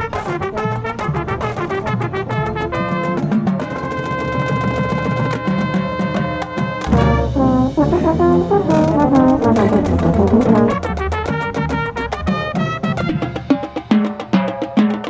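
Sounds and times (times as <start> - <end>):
marching band brass playing: 0.0 - 13.6
drums and cymbals hits: 4.6 - 15.0.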